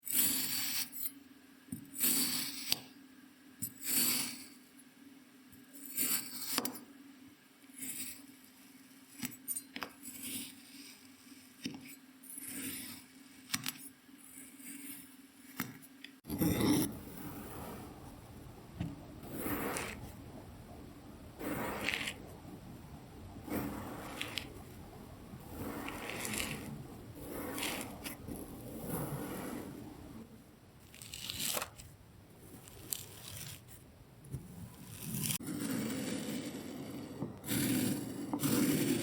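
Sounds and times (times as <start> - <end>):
gritty sand crunching: 23.4 - 30.1.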